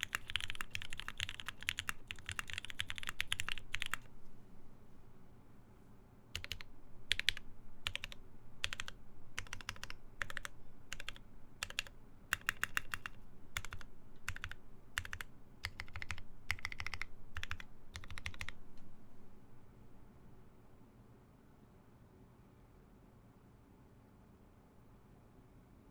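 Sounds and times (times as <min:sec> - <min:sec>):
mechanical keyboard typing: 0:00.0 - 0:04.1, 0:06.4 - 0:18.6.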